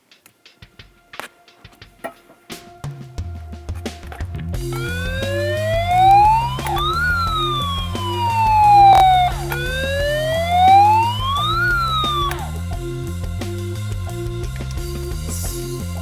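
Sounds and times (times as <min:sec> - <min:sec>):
background music with low beat: 0:00.0 - 0:16.0
siren wailing: 0:04.6 - 0:12.6.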